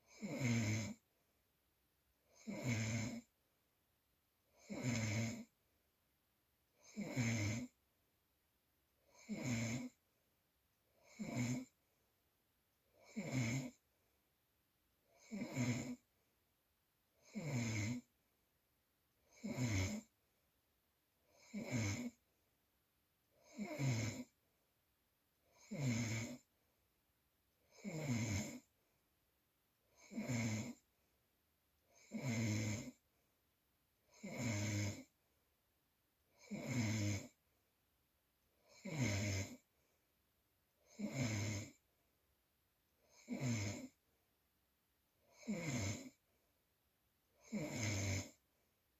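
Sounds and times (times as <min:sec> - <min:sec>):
person snoring: 0:00.1 - 0:01.0, 0:02.4 - 0:03.3, 0:04.6 - 0:05.5, 0:06.8 - 0:07.7, 0:09.2 - 0:10.0, 0:11.0 - 0:11.7, 0:13.0 - 0:13.8, 0:15.2 - 0:16.0, 0:17.2 - 0:18.1, 0:19.3 - 0:20.1, 0:21.4 - 0:22.2, 0:23.4 - 0:24.3, 0:25.6 - 0:26.4, 0:27.8 - 0:28.7, 0:30.0 - 0:30.8, 0:32.0 - 0:33.0, 0:34.2 - 0:35.1, 0:36.4 - 0:37.4, 0:38.7 - 0:39.6, 0:40.9 - 0:41.8, 0:43.1 - 0:44.0, 0:45.4 - 0:46.2, 0:47.4 - 0:48.4.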